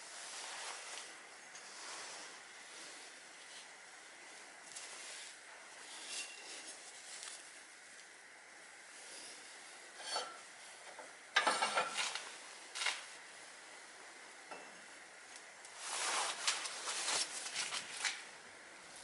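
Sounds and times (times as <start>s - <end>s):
metallic clinking and scraping: 10.0s - 10.4s.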